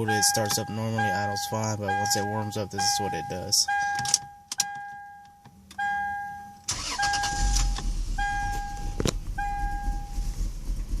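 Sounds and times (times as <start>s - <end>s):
car warning chime beeping: 0.0s - 10.3s
engine cranking and starting: 6.7s - 11.0s.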